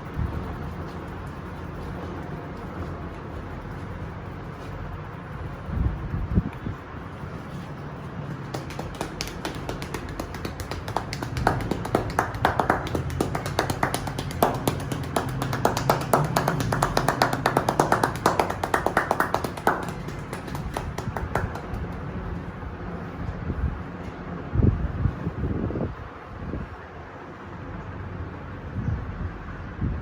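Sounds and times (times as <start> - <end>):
hands chopping and slapping on body: 8.5 - 22.0.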